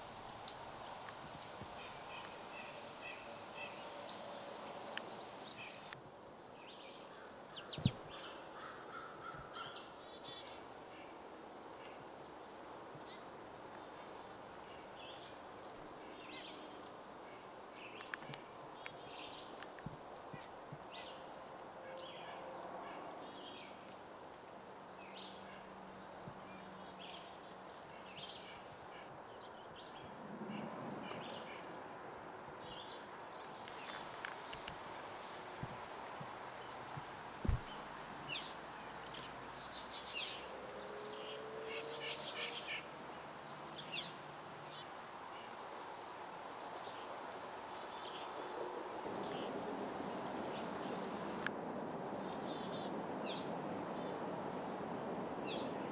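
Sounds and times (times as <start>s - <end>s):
birds chirping: 0.0s - 6.0s, 25.0s - 44.8s.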